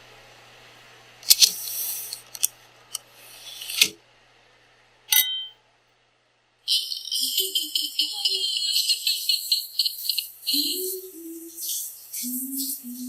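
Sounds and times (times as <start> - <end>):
short ringing clink: 5.1 - 5.6
hiss with falling swoop: 10.6 - 13.0.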